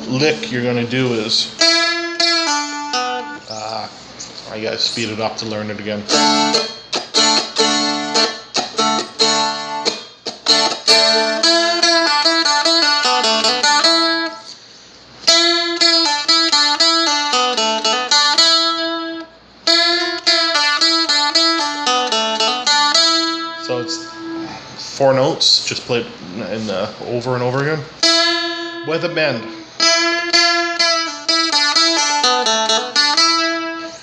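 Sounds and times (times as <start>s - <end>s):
picked fretted string instrument: 15.3s - 24.8s.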